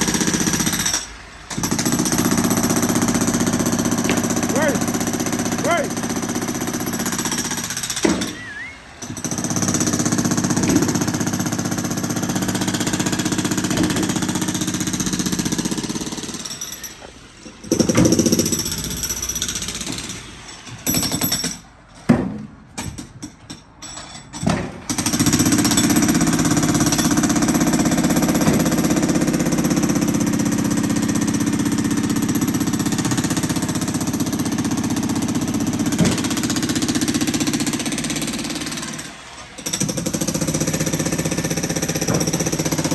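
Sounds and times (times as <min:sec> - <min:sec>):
jackhammer breaking concrete: 0:00.0 - 0:17.0, 0:17.6 - 0:21.6, 0:24.4 - 0:42.9.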